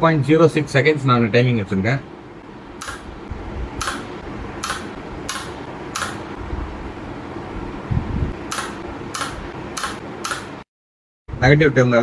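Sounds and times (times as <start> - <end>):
steady hum: 0.0 - 10.7
spot welder sharp cracks: 2.8 - 3.2, 3.8 - 6.3, 8.5 - 10.6.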